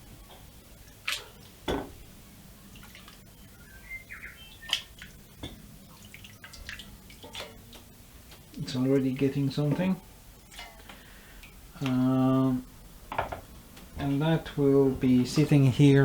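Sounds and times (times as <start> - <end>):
liquid swishing and dripping: 2.6 - 3.4, 4.6 - 8.6, 10.4 - 11.6.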